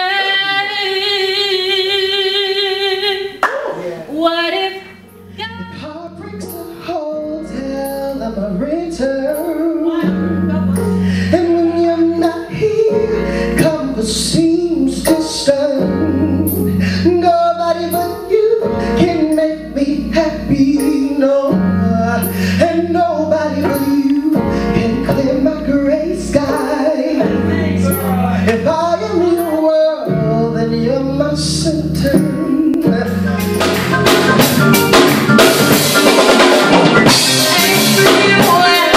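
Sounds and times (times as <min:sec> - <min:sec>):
woman singing: 0:00.0 - 0:06.0, 0:09.4 - 0:10.8, 0:26.4 - 0:28.0, 0:37.3 - 0:38.9
sustained bass chords: 0:03.5 - 0:38.9.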